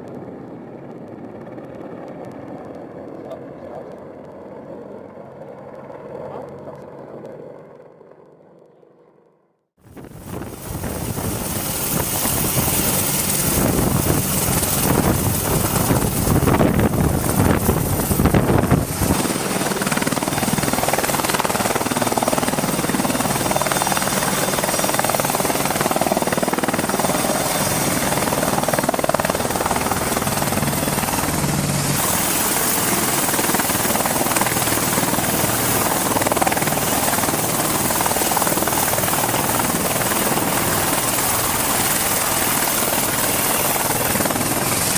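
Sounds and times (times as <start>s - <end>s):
helicopter rotor and turbine: 0.0s - 44.9s
high turbine whine: 9.9s - 44.9s.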